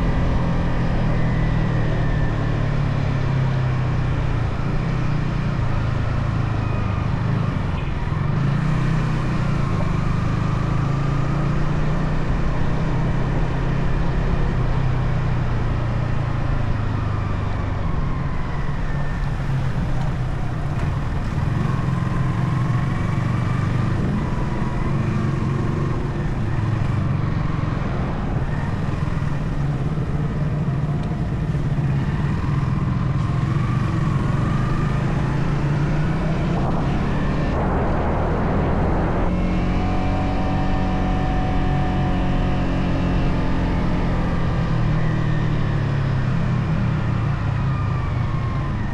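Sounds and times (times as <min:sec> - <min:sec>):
motorcycle engine revving: 0:19.4 - 0:46.8.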